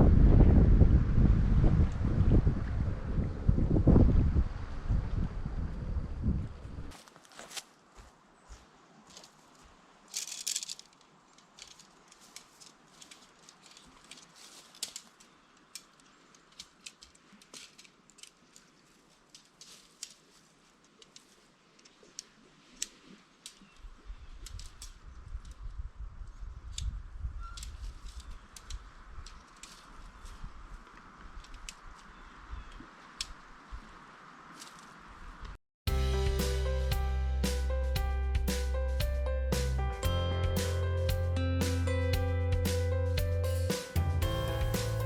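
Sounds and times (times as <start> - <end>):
wind buffeting microphone: 0.0 - 7.0, 23.8 - 34.0
camping gear clicks and rattles: 6.9 - 8.1, 9.0 - 25.8, 26.7 - 33.5, 34.5 - 35.0.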